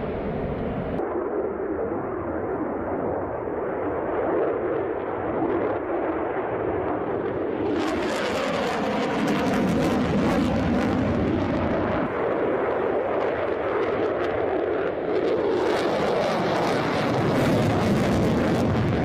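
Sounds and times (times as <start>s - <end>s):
jet engine roar: 0.0s - 19.0s.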